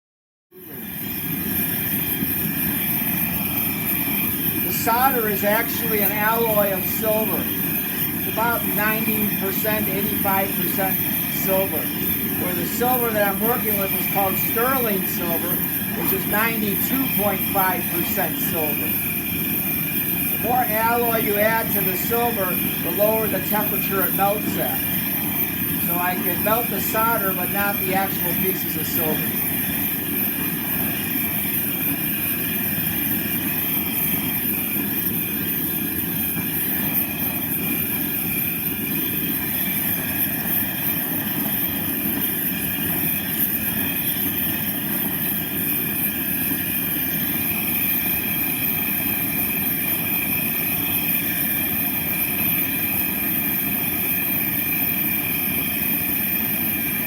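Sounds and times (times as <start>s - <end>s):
gas torch burning: 0.6s - 57.0s.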